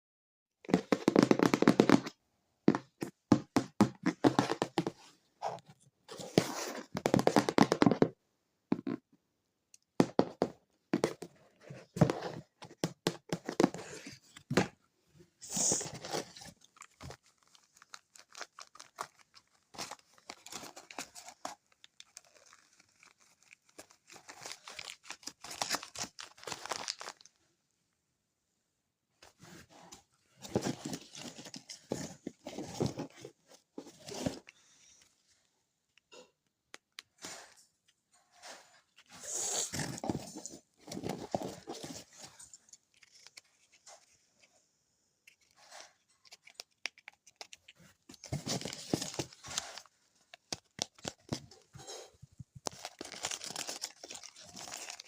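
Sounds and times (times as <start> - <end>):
plastic toy rustling and crinkling: 15.4 - 27.4, 29.2 - 35.5, 36.8 - 44.6, 45.2 - 55.0.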